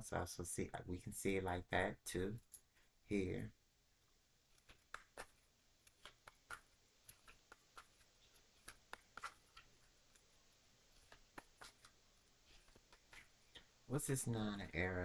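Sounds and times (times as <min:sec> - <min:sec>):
cards clicking and rustling: 0:04.5 - 0:15.0.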